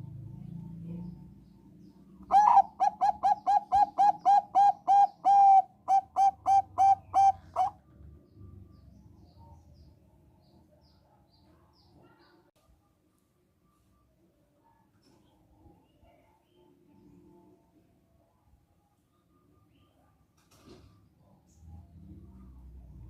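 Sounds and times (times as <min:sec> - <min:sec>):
dove cooing: 0:02.3 - 0:07.8.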